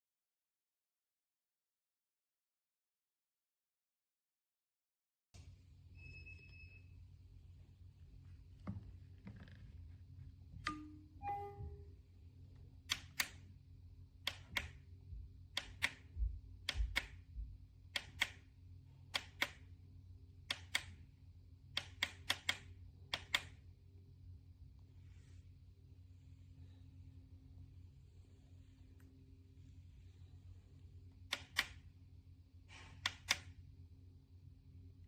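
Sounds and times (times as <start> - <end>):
faint steady hum: 5.4 - 35.0
button clicking: 10.6 - 11.6
two-note electronic beep: 10.7 - 11.9.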